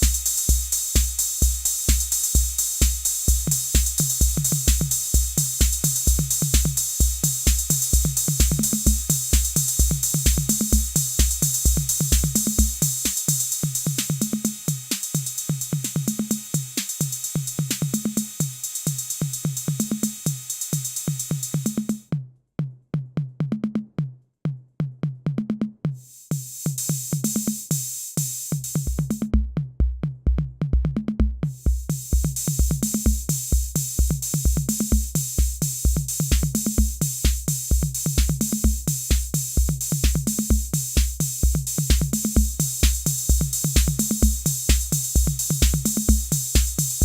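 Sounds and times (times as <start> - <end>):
bright cymbal: 0.0 - 22.0
drum machine beat: 0.0 - 47.0
deep bass drum: 28.8 - 47.0.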